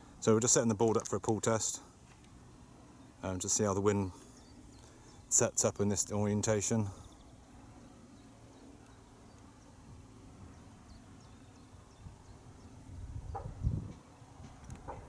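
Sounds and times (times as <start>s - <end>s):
wind rumble on microphone: 11.9s - 15.0s.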